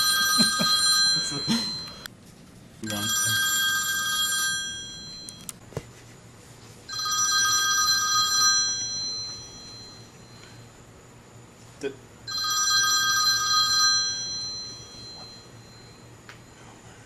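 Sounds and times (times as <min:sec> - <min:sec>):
telephone bell ringtone: 0:00.0 - 0:02.1, 0:02.9 - 0:05.5, 0:06.9 - 0:10.7, 0:12.3 - 0:16.1.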